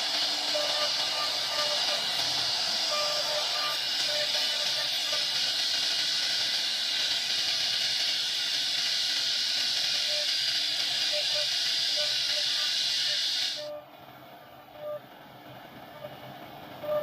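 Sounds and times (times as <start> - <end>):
cnc router running: 0.0 - 6.1.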